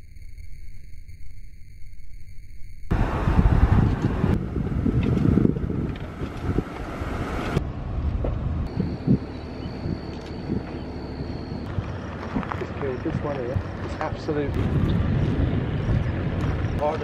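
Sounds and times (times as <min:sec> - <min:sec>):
wind buffeting microphone: 0:02.9 - 0:17.0.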